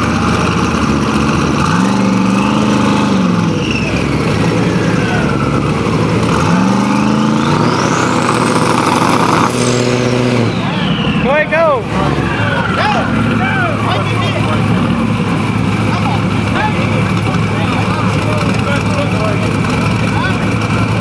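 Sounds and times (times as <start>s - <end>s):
drag race car engines revving: 0.0s - 21.0s
high whine: 3.2s - 13.3s.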